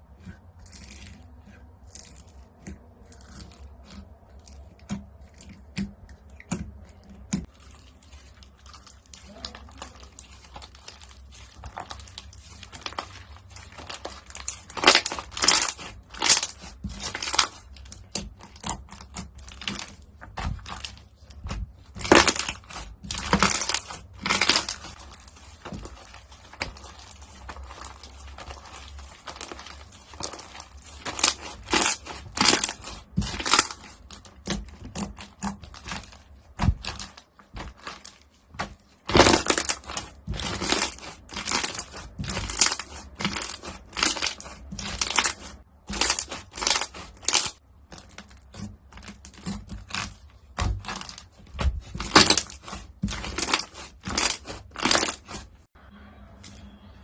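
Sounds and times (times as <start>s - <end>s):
crunchy slime squeezed by hand: 39.0s - 55.6s.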